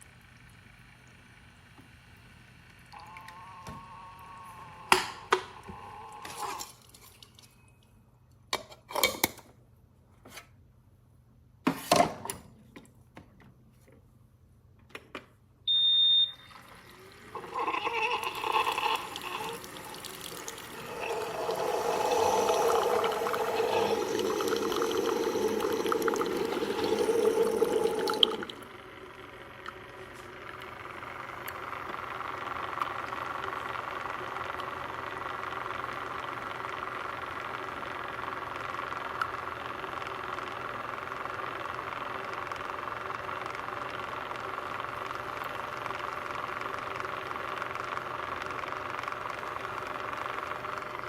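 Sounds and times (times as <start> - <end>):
water pumping and gurgling: 2.9 - 4.9, 16.3 - 33.9
short electronic beep: 15.7 - 16.5.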